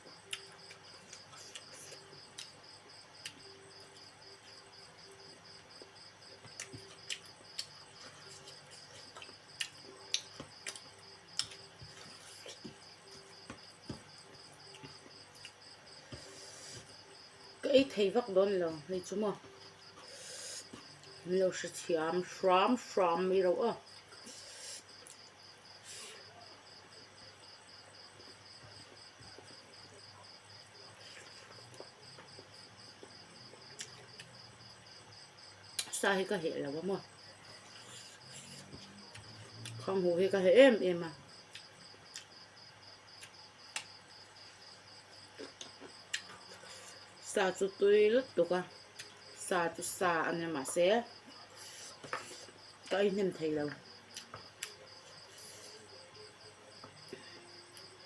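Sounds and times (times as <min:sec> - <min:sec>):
cricket chirping: 0:00.0 - 0:49.4
person eating with clicks and smacks: 0:00.2 - 0:02.6, 0:06.4 - 0:17.0, 0:31.0 - 0:34.4, 0:35.7 - 0:36.0, 0:41.5 - 0:42.3, 0:43.1 - 0:44.0, 0:45.2 - 0:47.1, 0:48.9 - 0:49.2, 0:51.5 - 0:53.0, 0:54.1 - 0:55.8.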